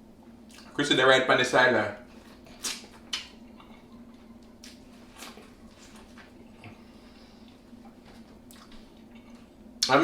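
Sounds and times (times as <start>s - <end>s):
steady low hum: 0.0s - 10.0s
wet eating squishes: 2.1s - 6.8s.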